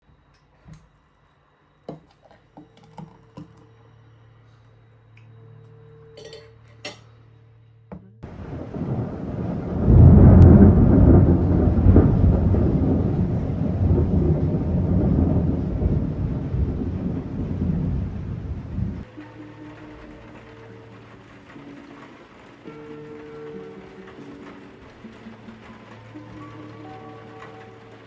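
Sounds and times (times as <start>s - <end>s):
long deep rumble: 8.2s - 19.1s.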